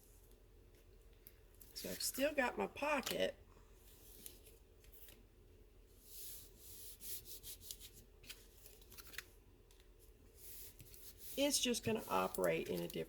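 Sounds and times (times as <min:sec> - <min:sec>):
cardstock rustling: 0:07.4 - 0:09.3, 0:10.6 - 0:13.0.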